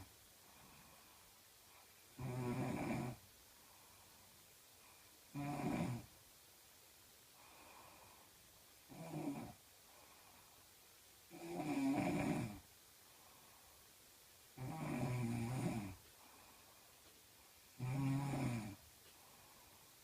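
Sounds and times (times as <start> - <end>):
faint breaths: 0.0 - 2.4, 3.1 - 5.4, 6.0 - 20.0
woman snoring heavily: 2.2 - 3.2, 5.3 - 6.1, 8.9 - 9.6, 11.3 - 12.6, 14.6 - 16.0, 17.8 - 18.8.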